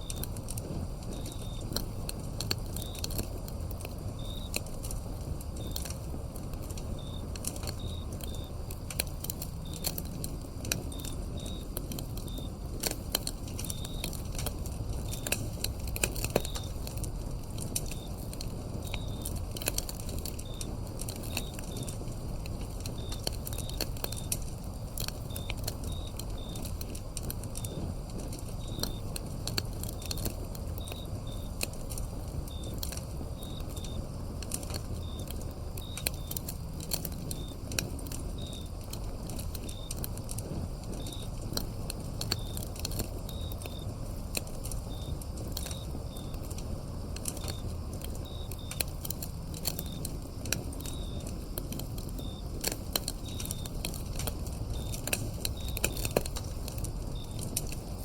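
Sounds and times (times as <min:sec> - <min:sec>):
crickets chirping: 0:00.0 - 0:58.0
firewood crackling and popping: 0:00.0 - 0:58.0.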